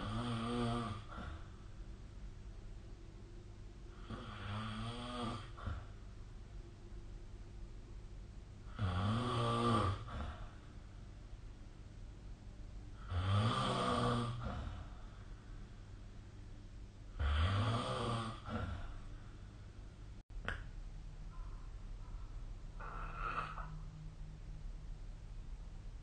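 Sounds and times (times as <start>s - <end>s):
person snoring: 0.0s - 1.5s, 3.9s - 6.0s, 8.7s - 10.6s, 13.0s - 15.1s, 17.1s - 19.1s, 22.8s - 23.8s.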